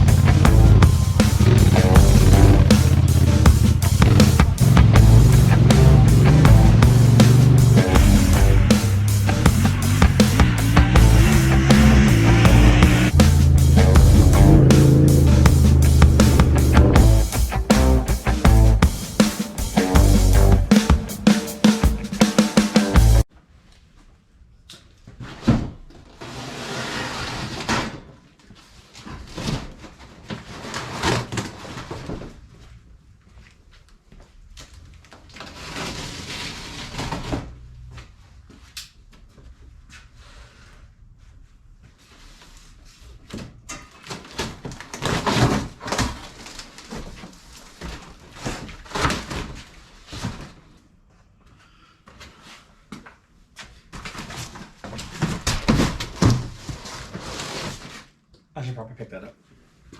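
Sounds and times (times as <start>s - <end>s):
sharp thump: 0.0s - 18.9s.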